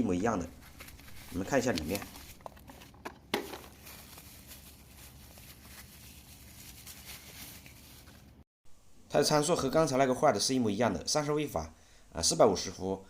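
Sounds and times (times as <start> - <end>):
handling clicks and rustle: 0.6 - 5.9.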